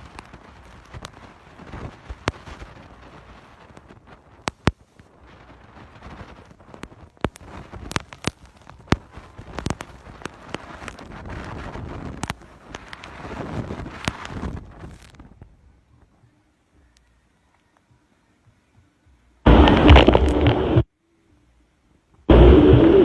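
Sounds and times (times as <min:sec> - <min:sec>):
sharp cracks and knocks: 0:00.0 - 0:02.8, 0:03.6 - 0:05.1, 0:06.0 - 0:15.3, 0:19.5 - 0:20.9
rain: 0:00.0 - 0:15.3, 0:19.4 - 0:20.9
storm wind: 0:00.0 - 0:15.6, 0:19.4 - 0:20.9, 0:22.3 - 0:23.0.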